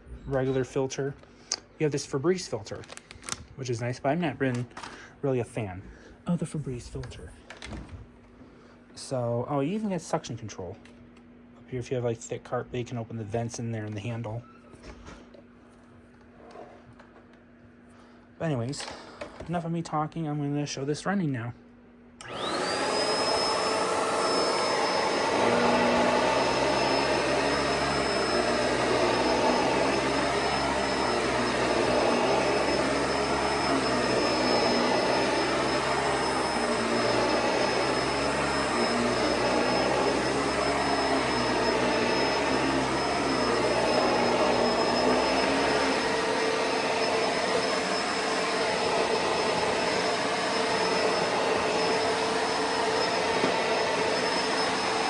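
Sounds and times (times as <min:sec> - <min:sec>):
vacuum cleaner motor whine: 0:22.2 - 0:55.0.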